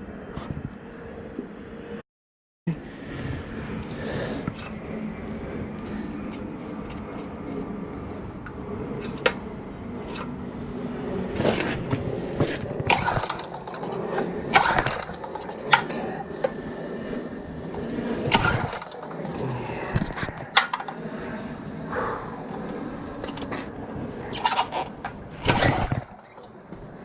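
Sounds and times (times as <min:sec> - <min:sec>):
engine turning over: 0:11.2 - 0:16.6, 0:17.6 - 0:21.0, 0:22.5 - 0:26.9
recoil starter rope pulls: 0:11.3 - 0:16.0, 0:18.3 - 0:20.9, 0:23.2 - 0:26.5.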